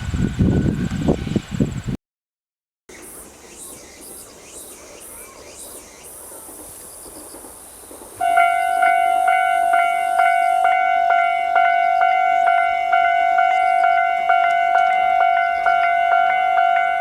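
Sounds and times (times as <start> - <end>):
level crossing warning bell: 8.2 - 17.0.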